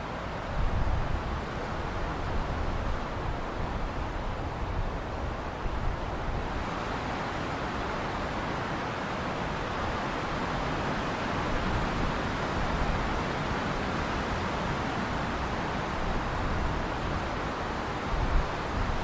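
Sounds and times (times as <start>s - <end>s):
strong wind blowing: 0.0s - 7.0s, 11.4s - 19.0s.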